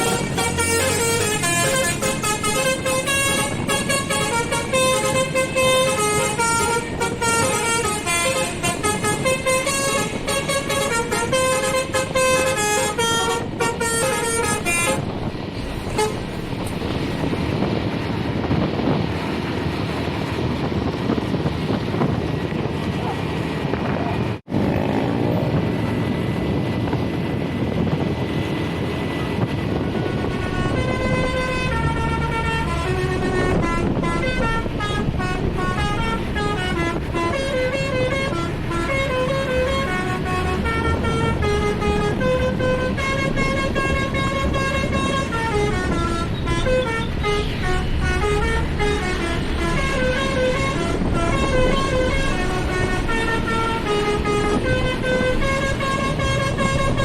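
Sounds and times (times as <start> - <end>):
musical air horn tune: 0.0 - 15.1, 15.9 - 16.3, 29.7 - 57.0
engine and road noise: 0.0 - 57.0.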